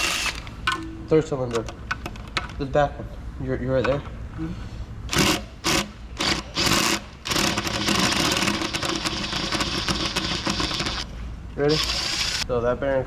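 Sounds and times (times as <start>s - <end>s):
power tool running: 0.0s - 0.5s, 5.1s - 12.4s.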